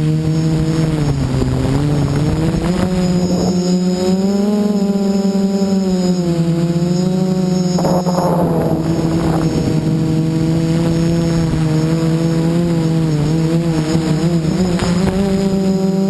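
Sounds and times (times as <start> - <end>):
quadcopter motors humming: 0.0 - 16.0
wind buffeting: 0.6 - 15.7.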